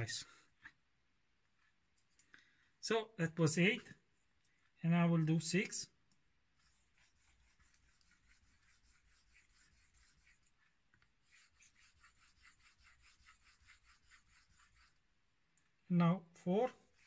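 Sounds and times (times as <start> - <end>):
razor scratching on whetstone: 6.6 - 15.0, 16.7 - 17.0.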